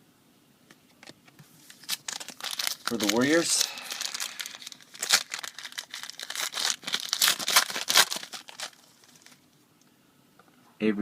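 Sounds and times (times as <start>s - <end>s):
foil wrapper crinkling and tearing: 1.0s - 9.4s.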